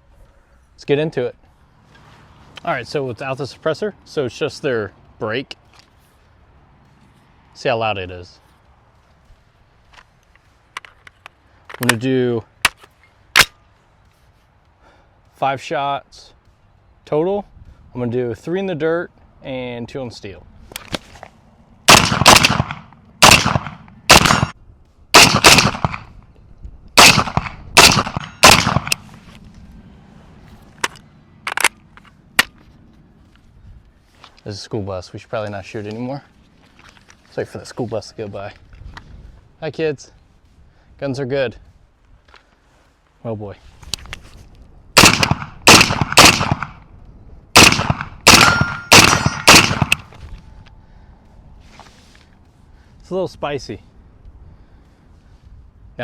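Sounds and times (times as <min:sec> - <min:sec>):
loud rifle shots: 0:21.9 - 0:26.1, 0:27.0 - 0:29.1, 0:45.0 - 0:46.8, 0:47.6 - 0:50.1
steel target ringing: 0:48.3 - 0:49.5.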